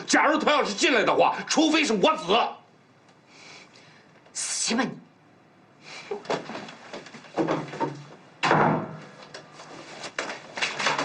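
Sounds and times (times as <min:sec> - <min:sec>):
door banging: 0:07.4 - 0:09.2.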